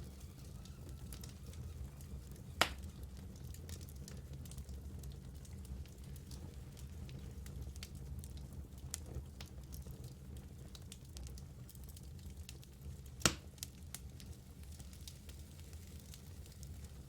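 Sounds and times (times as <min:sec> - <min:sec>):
fire crackling: 0:00.0 - 0:17.0
flames rumbling: 0:00.0 - 0:17.0
loud pop from fire: 0:02.6 - 0:02.9, 0:13.2 - 0:14.0.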